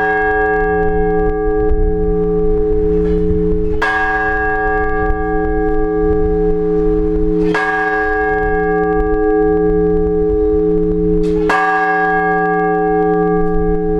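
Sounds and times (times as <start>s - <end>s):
church bells ringing: 0.0s - 13.9s.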